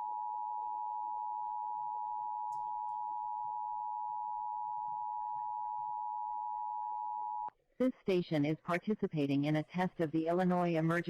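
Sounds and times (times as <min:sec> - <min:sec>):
steady two-tone alarm: 0:00.0 - 0:07.5.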